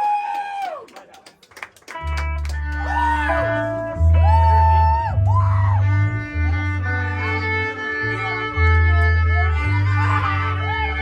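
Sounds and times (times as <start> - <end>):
live band playing: 2.0 - 9.4
deep bass notes: 2.0 - 11.0
sliding high melody: 2.1 - 9.8.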